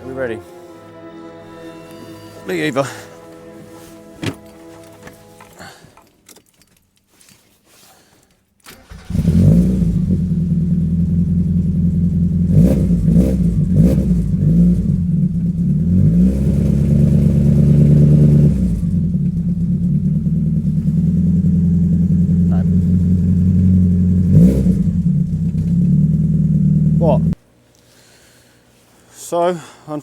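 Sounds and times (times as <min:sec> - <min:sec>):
car engine rough idle: 0:08.9 - 0:27.4.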